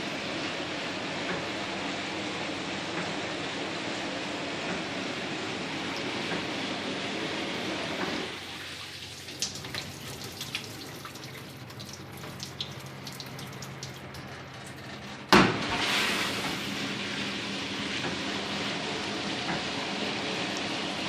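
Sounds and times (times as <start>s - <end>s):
dishwasher motor hum: 0.0s - 21.0s
dishwasher water spraying: 8.4s - 14.8s
loud clunk: 15.3s - 16.6s.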